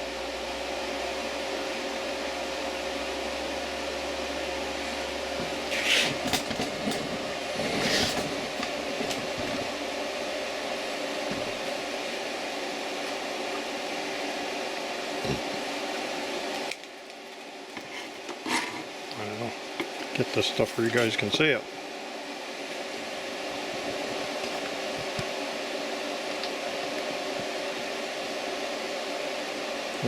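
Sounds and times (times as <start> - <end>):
inverter fan whirring: 0.0 - 30.0.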